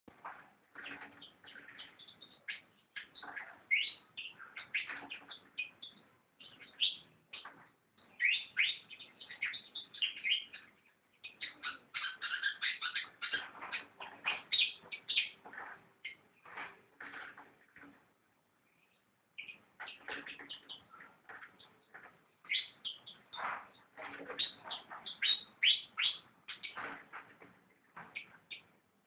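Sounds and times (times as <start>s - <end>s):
bird chirping and whistling: 11.4s - 13.4s.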